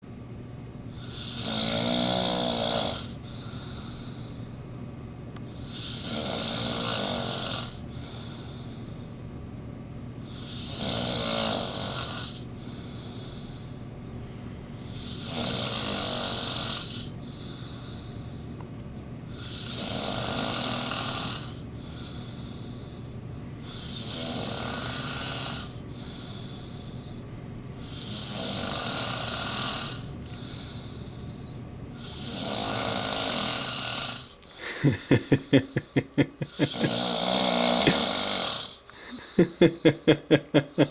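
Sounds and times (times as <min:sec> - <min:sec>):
man snoring: 0:01.0 - 0:04.2, 0:05.7 - 0:08.6, 0:10.3 - 0:13.6, 0:14.9 - 0:18.1, 0:19.4 - 0:22.7, 0:23.7 - 0:26.5, 0:27.8 - 0:30.9, 0:32.0 - 0:40.9
quiet breathing: 0:03.2 - 0:04.6, 0:07.8 - 0:09.3, 0:17.1 - 0:18.6, 0:21.8 - 0:23.1, 0:25.9 - 0:27.2, 0:30.0 - 0:32.2, 0:38.8 - 0:39.5.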